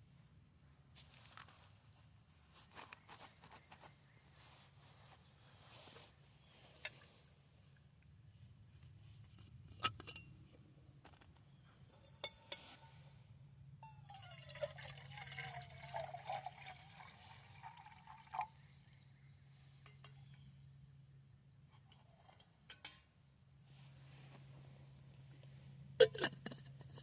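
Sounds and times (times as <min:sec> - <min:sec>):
liquid pouring into container: 0:14.0 - 0:18.6.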